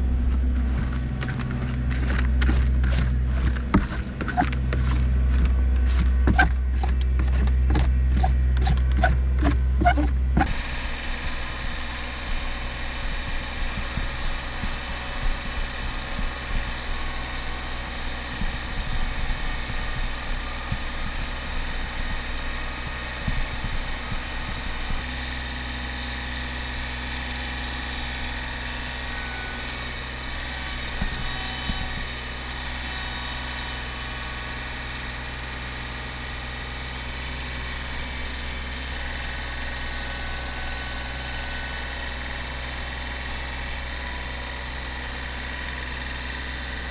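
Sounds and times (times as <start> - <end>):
engine running steadily: 0.0 - 46.9
knocks and rattles: 0.3 - 10.6.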